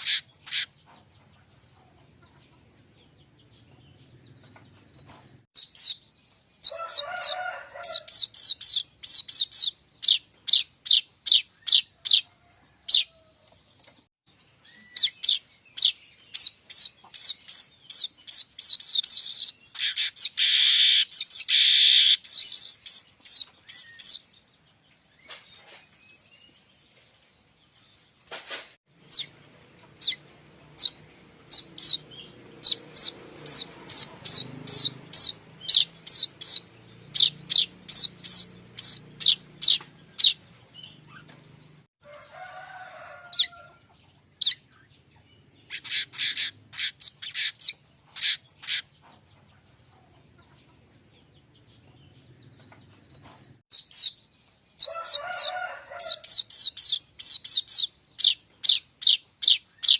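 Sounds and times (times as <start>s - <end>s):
bird chirping high and sharp: 0.0s - 0.9s, 5.6s - 12.3s, 14.6s - 24.5s, 29.0s - 29.4s, 30.0s - 41.4s, 44.3s - 44.9s, 45.5s - 49.0s, 53.6s - 59.9s.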